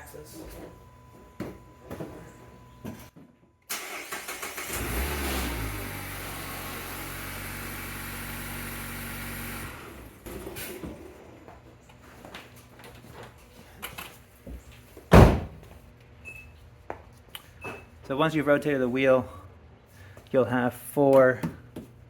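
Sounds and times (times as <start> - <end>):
car engine starting and idling: 3.7 - 11.3.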